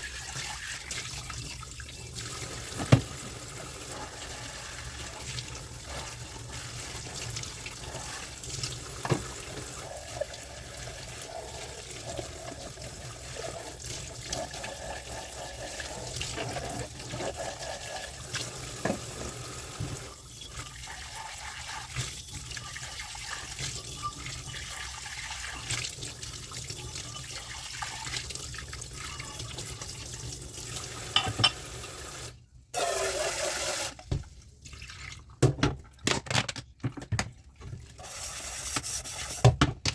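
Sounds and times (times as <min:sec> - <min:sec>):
tap running into sink: 0:02.7 - 0:03.4, 0:09.0 - 0:09.4, 0:18.8 - 0:20.1
crockery and utensils clinking: 0:31.1 - 0:31.7.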